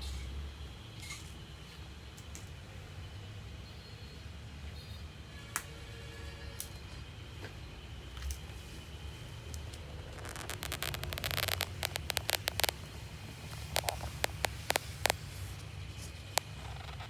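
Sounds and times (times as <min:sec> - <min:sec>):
steady low hum: 0:08.7 - 0:17.0
rustling: 0:10.0 - 0:17.0.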